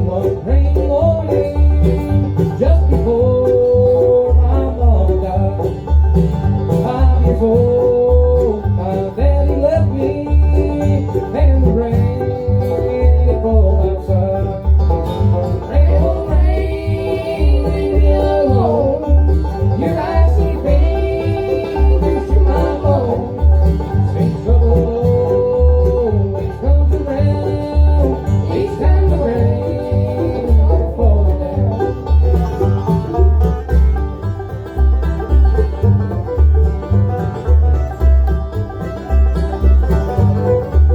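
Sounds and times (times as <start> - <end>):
banjo: 0.0 - 40.9
bluegrass band playing: 0.0 - 40.9
pulsing bass: 0.0 - 40.9.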